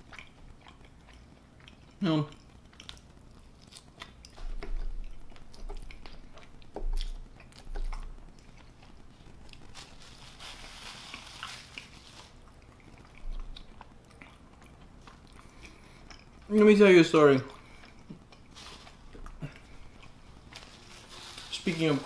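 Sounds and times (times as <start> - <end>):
chewing and mouth sounds: 0.0 - 21.4.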